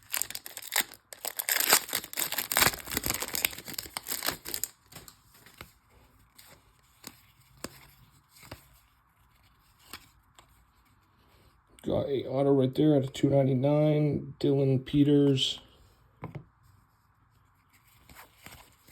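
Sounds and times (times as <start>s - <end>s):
wrapper crinkling and tearing: 0.0s - 5.2s.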